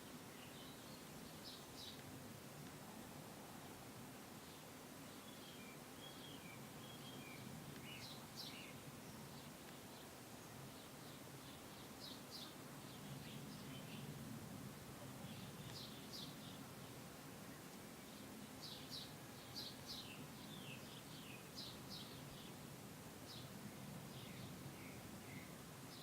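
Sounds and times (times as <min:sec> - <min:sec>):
small birds chirping: 0:00.0 - 0:02.1, 0:04.4 - 0:14.3, 0:15.1 - 0:22.6, 0:23.2 - 0:26.0.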